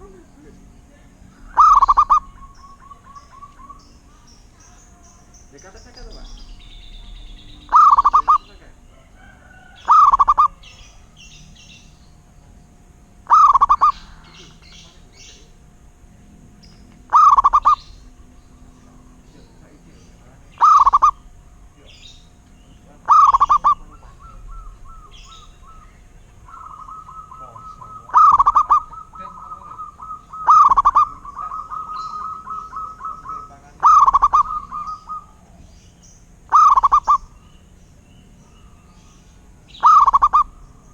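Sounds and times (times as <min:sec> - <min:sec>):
rapid repeated dove notes: 0:00.0 - 0:09.2, 0:09.8 - 0:12.3, 0:12.9 - 0:37.4, 0:39.4 - 0:40.9
dove cooing: 0:00.0 - 0:40.9.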